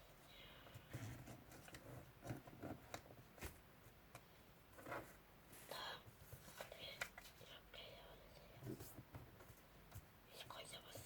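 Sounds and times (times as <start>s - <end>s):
faint paper rustling: 4.7s - 7.6s.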